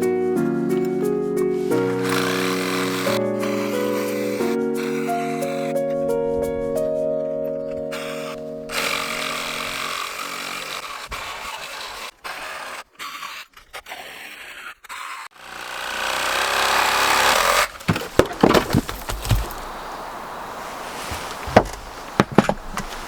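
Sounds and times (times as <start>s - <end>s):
chainsaw cutting wood: 1.7s - 5.7s, 7.9s - 19.6s
heavy wood knocks: 17.8s - 19.7s, 21.4s - 23.0s.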